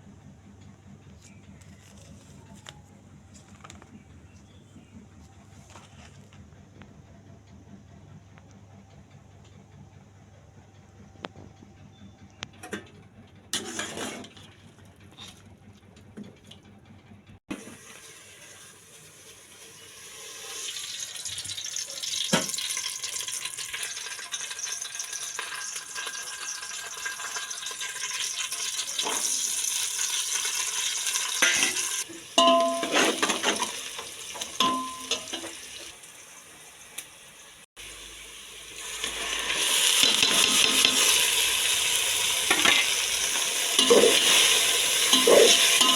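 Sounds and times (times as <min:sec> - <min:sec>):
food sizzling in a hot pan: 0:17.6 - 0:45.9
metal clinks against pan: 0:32.4 - 0:33.6, 0:34.4 - 0:35.6.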